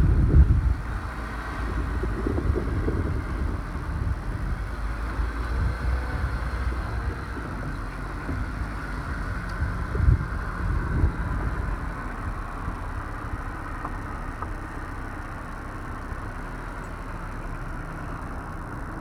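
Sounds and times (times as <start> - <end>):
wind buffeting microphone: 0.0 - 14.6
low outdoor rumble: 0.0 - 19.0.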